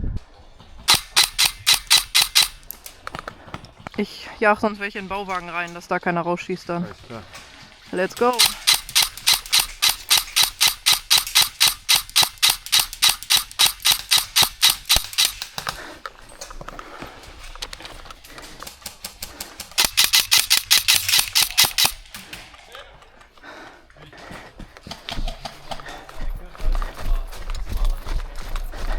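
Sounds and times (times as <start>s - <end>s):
airsoft gun rapid firing: 0.8s - 3.0s, 8.2s - 15.8s, 18.6s - 22.3s.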